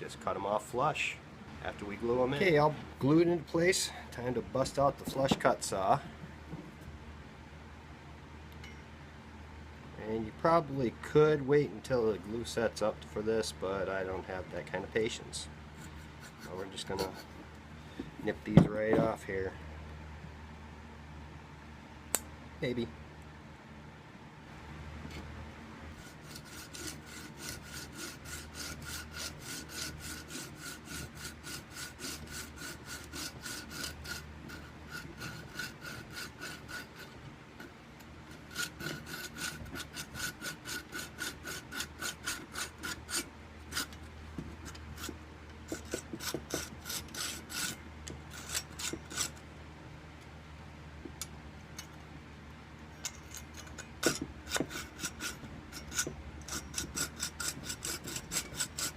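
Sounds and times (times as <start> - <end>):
hand saw cutting wood: 15.8 - 17.4, 25.9 - 37.2, 38.3 - 44.0, 44.6 - 49.4, 53.3 - 58.9.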